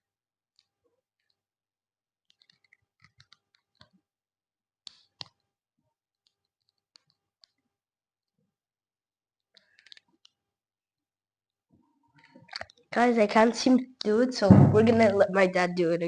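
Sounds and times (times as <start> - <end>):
plastic model parts clicking: 2.3 - 3.9, 9.6 - 10.4.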